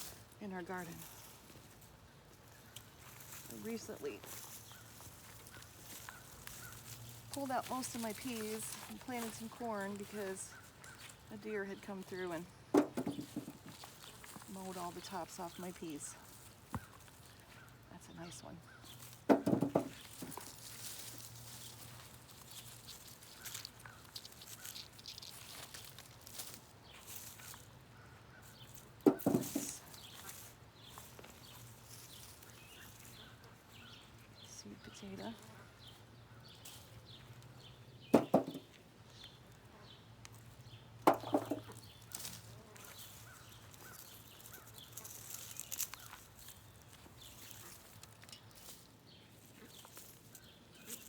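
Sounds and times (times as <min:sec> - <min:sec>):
hands rustling through soil: 0:00.0 - 0:12.4, 0:18.7 - 0:27.9, 0:28.5 - 0:37.6, 0:41.2 - 0:51.0
thumps in soil: 0:12.7 - 0:14.0, 0:19.2 - 0:20.5, 0:29.0 - 0:29.8, 0:38.1 - 0:38.7, 0:41.0 - 0:41.8.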